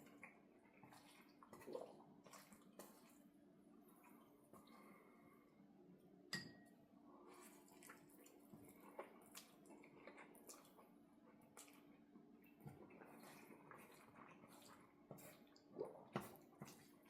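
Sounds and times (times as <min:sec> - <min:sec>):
soft wet chewing: 0:00.0 - 0:05.2, 0:07.2 - 0:17.0.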